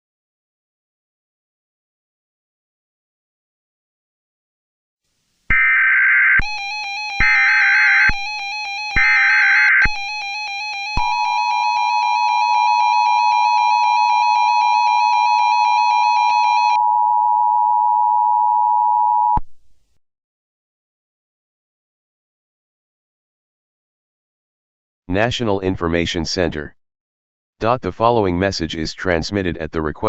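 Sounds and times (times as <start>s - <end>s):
data bursts: 5.5s - 11.6s
wavering synthesizer tone: 5.5s - 19.4s.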